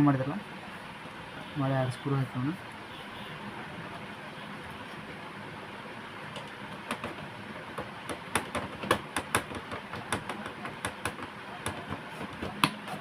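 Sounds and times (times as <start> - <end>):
screwdriver clicking and tapping: 6.4 - 12.8.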